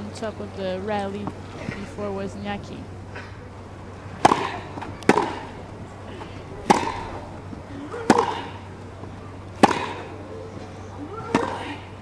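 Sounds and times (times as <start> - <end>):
racket hitting tennis ball: 4.0 - 11.9.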